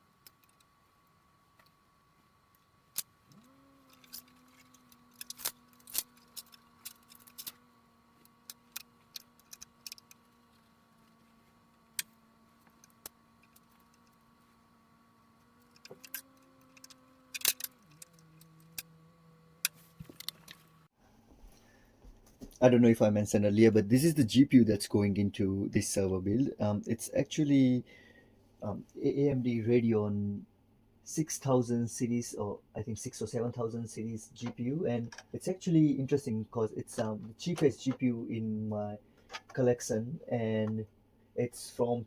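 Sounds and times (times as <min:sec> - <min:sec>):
faint steady hum: 0:00.0 - 0:42.0
sharp clicks and metal clinks: 0:02.9 - 0:07.6, 0:15.6 - 0:18.9.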